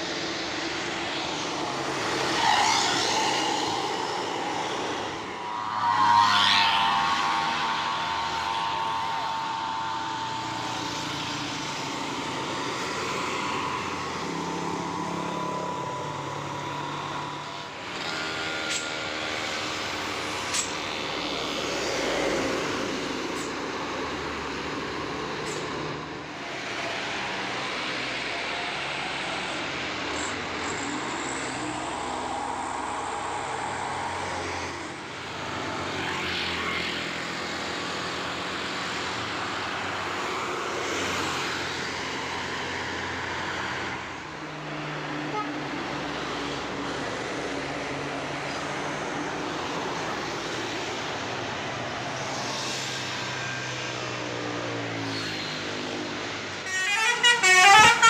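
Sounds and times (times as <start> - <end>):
diesel engines under load: 0.0 - 5.7, 6.4 - 58.0
road noise: 0.0 - 58.0
multi-tone bus horn: 45.1 - 46.0, 56.6 - 58.0.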